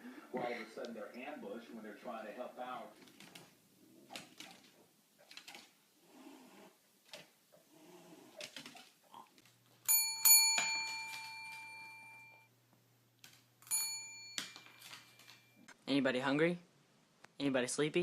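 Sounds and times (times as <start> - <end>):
small metal bell ringing: 9.9 - 12.5, 13.6 - 15.6.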